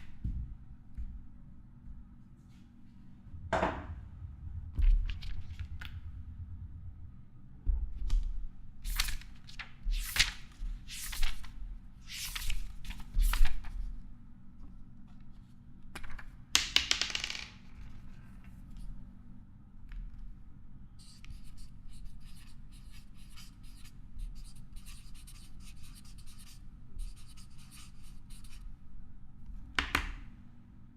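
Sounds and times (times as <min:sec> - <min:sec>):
low thumps: 0:03.3 - 0:08.4.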